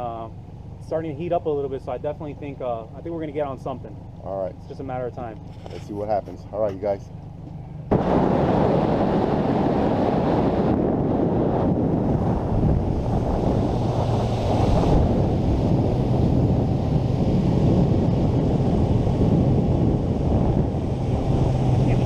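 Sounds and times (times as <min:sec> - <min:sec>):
wind buffeting microphone: 0:07.7 - 0:22.0
water noise: 0:07.9 - 0:17.9.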